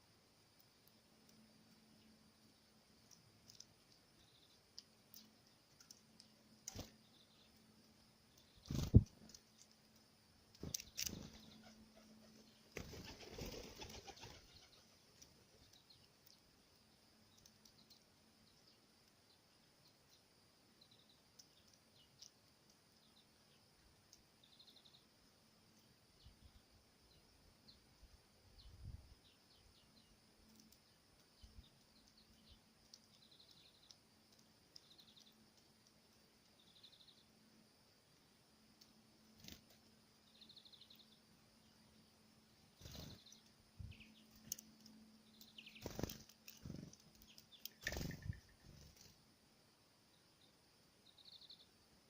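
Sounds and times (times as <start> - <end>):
faint high bird chirps: 0.0 - 9.8, 10.5 - 37.6, 38.7 - 49.2, 49.9 - 51.9
birds pecking and knocking: 8.4 - 11.7, 42.8 - 49.2
wingbeats flurry: 8.6 - 9.7, 10.6 - 15.6, 42.8 - 43.5, 45.6 - 49.2.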